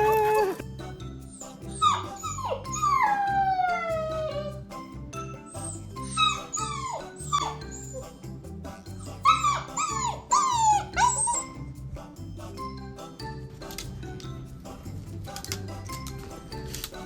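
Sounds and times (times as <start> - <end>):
dog whining: 0.0 - 0.6, 1.3 - 4.6, 5.4 - 8.1, 9.2 - 11.6
background music: 0.0 - 17.0.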